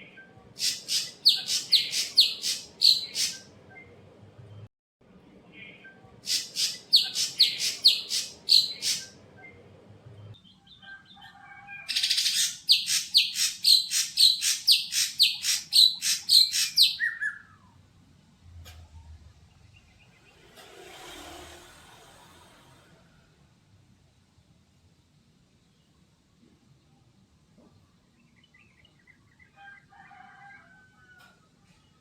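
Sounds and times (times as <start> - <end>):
bird sharp chirping song: 0.1 - 4.0, 5.6 - 9.6, 11.9 - 17.7.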